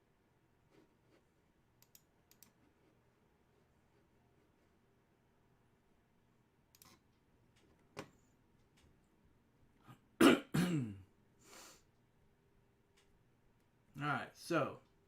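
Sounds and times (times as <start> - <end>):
faint clicks: 1.8 - 2.6
person coughing: 10.2 - 11.1.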